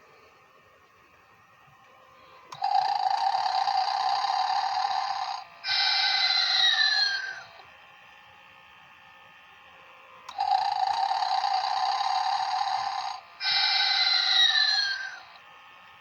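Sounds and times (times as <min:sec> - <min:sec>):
toy snoring through small speaker: 0:02.4 - 0:07.6, 0:10.3 - 0:15.4.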